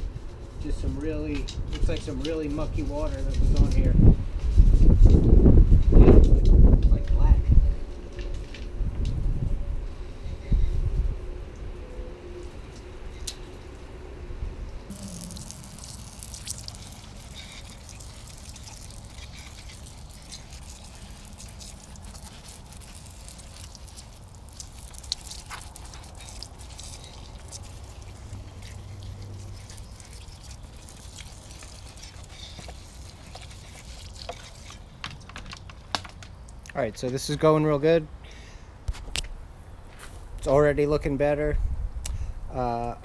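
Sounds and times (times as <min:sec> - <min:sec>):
water dripping and trickling: 0:14.9 - 0:36.7.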